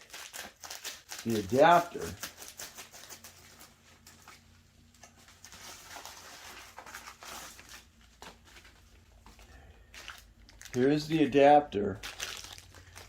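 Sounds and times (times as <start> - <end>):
low steady hum: 0.1 - 13.0
soft handling rustles and clicks: 3.0 - 10.8.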